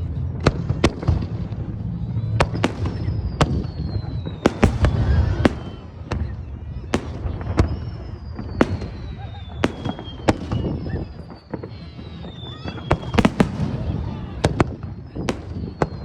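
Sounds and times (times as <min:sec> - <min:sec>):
low rumble: 0:00.0 - 0:09.2
falling firework whistle: 0:00.5 - 0:16.0
firework shells bursting: 0:02.4 - 0:06.3.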